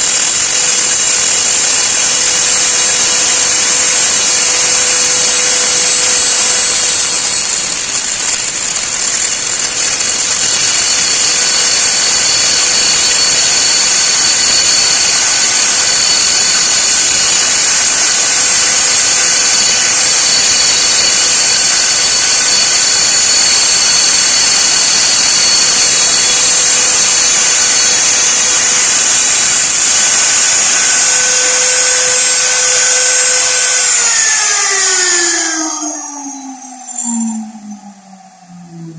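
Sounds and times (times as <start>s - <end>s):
router motor whine: 0.0s - 38.9s.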